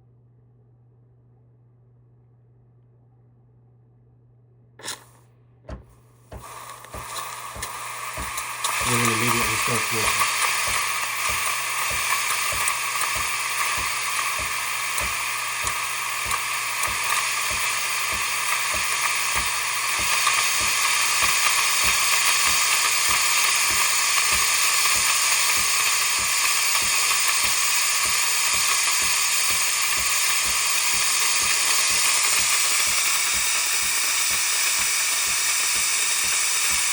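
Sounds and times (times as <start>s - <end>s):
steam wand hissing: 4.8s - 5.2s, 6.3s - 36.9s.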